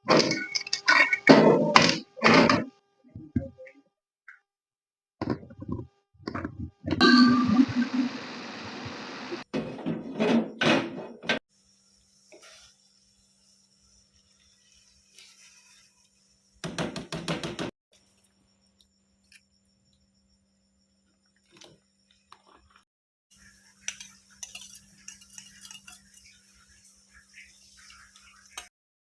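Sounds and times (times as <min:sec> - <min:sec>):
kitchen utensils clinking: 0:23.8 - 0:26.4.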